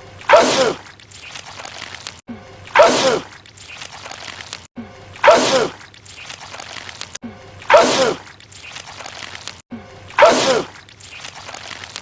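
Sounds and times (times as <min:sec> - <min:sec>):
man sneezing: 0:07.7 - 0:08.2, 0:10.2 - 0:10.7.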